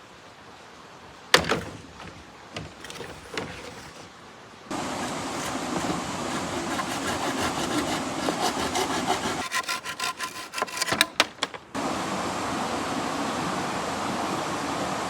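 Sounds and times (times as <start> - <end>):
hand saw cutting wood: 1.4 - 4.1, 4.7 - 11.6.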